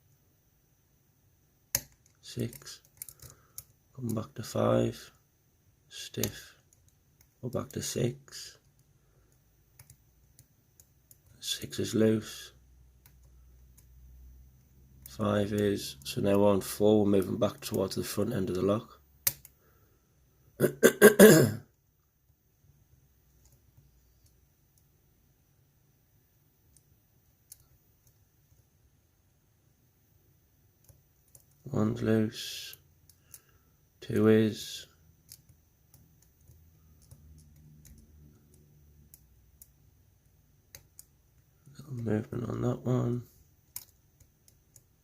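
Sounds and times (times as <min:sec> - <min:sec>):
faint lock pick clicks: 0:01.7 - 0:03.8, 0:19.2 - 0:19.6, 0:35.2 - 0:39.8, 0:43.7 - 0:45.0
faint small clicks: 0:01.7 - 0:04.2, 0:08.6 - 0:11.4, 0:13.0 - 0:13.9, 0:19.2 - 0:19.6, 0:26.7 - 0:28.7, 0:30.8 - 0:31.6, 0:35.2 - 0:39.8, 0:40.7 - 0:42.1, 0:43.6 - 0:44.9
man coughing: 0:20.6 - 0:21.6.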